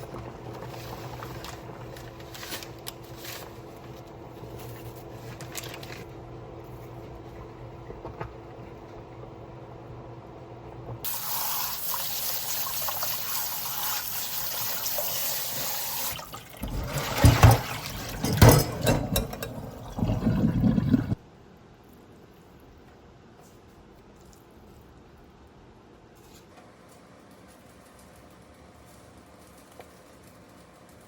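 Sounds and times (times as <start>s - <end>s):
tap water running into sink: 11.1s - 21.2s
loud knocks in sink: 17.0s - 19.2s.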